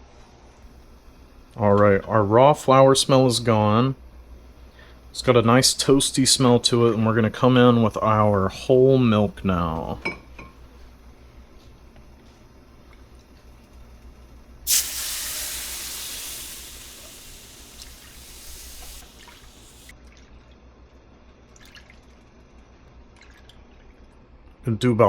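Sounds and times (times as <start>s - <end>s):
milk hissing in hot pan: 14.7s - 19.9s.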